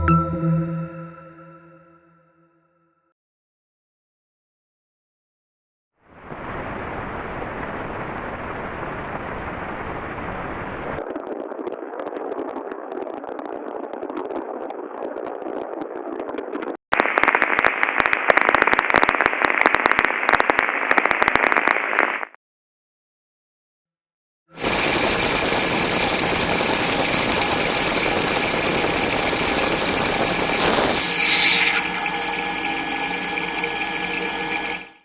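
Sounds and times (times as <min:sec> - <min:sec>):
ultrasound detector hiss with crackles: 0:29.5 - 0:32.2.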